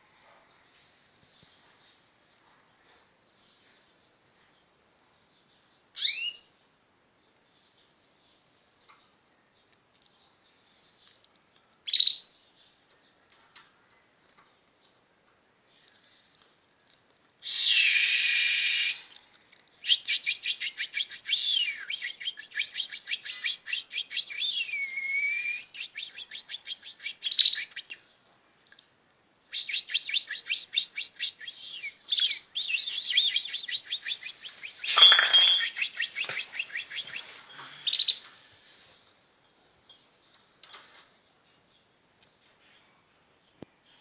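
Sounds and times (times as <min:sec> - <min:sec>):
small birds chirping: 0:19.5 - 0:28.2, 0:29.5 - 0:38.5
sliding whistled notes: 0:29.6 - 0:37.4
harsh noisy bird call: 0:29.6 - 0:38.2.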